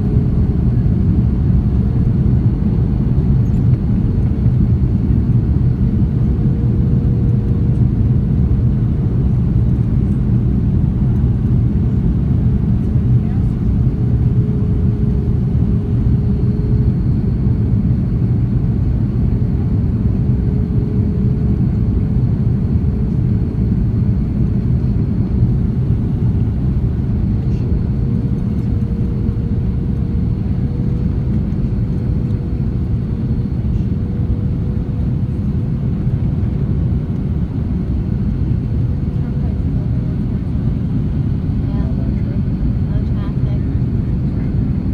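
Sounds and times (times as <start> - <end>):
jet engine and airflow rumble: 0.0 - 44.9.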